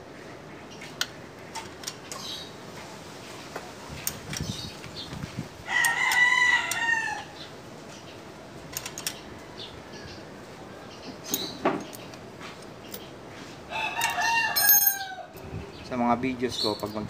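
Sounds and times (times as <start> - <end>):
rooster crowing: 5.6 - 7.4, 13.7 - 15.4.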